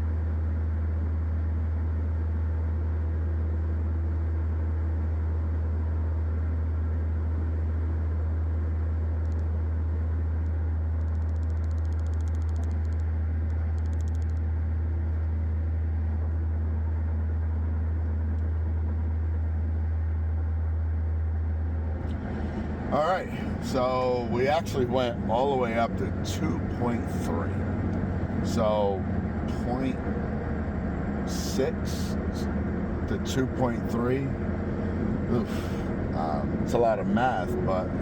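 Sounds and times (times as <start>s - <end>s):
low test tone through car stereo: 0.0s - 38.0s
highway road noise: 21.7s - 38.0s.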